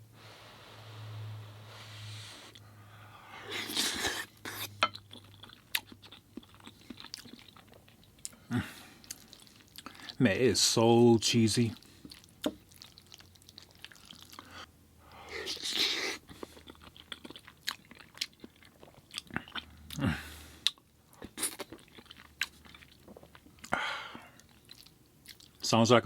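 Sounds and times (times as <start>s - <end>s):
close chewing with mouth clicks: 3.5s - 10.2s, 11.7s - 14.7s, 15.3s - 25.6s.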